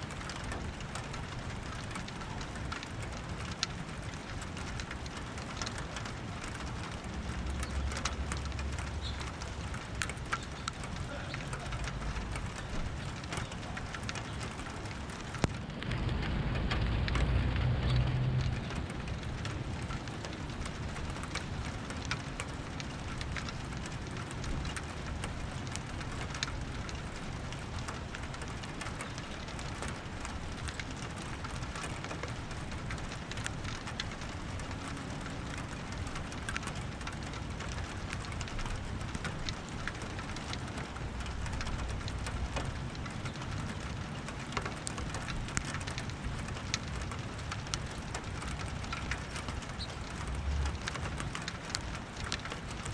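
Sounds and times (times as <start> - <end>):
steady rain: 0.0 - 52.9
thunder rumble: 7.0 - 22.8.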